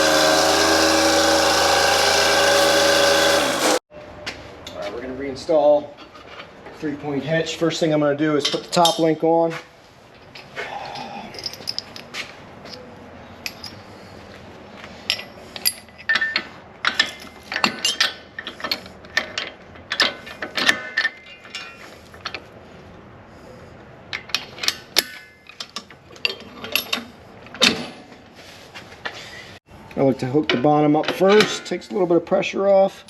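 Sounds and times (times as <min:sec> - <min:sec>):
metal clanks and clicks: 0:30.4 - 0:31.8.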